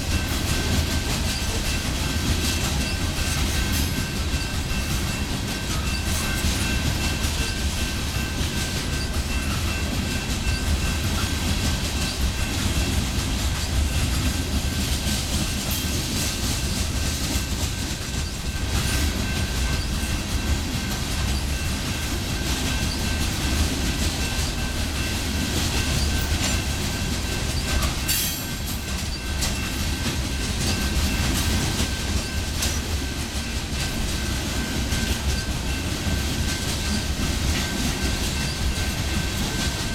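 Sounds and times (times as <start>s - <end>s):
freight train rumbling past: 0.0s - 39.9s.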